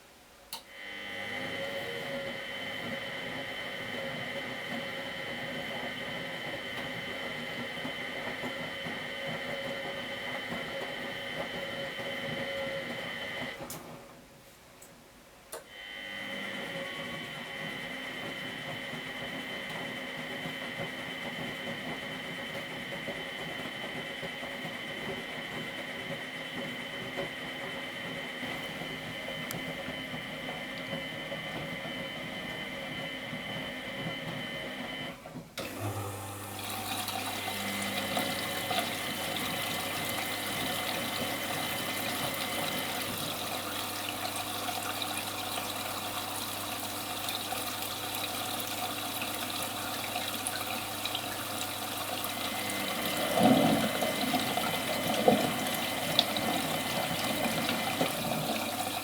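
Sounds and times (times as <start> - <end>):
washing machine whine: 0.5 - 14.5, 15.5 - 59.0
water rushing in: 49.4 - 59.0.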